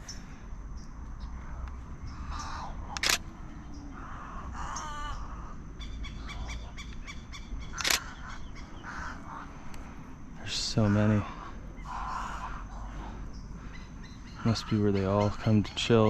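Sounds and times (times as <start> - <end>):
harsh crow-like bird calls: 1.2 - 16.0
camera shutter clicks: 2.9 - 3.3, 7.7 - 8.1
repeated bird chirps: 4.6 - 9.5.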